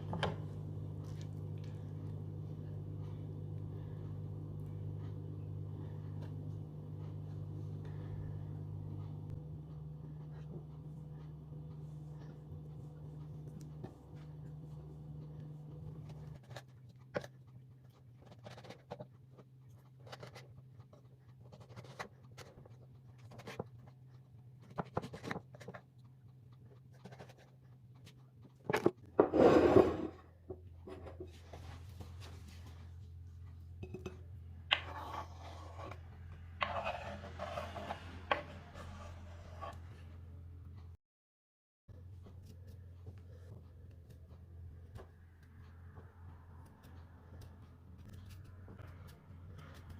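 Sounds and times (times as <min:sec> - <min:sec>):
steady low hum: 0:00.0 - 0:41.0, 0:41.9 - 0:49.9
rubbing or scraping: 0:29.2 - 0:30.2, 0:34.7 - 0:40.1.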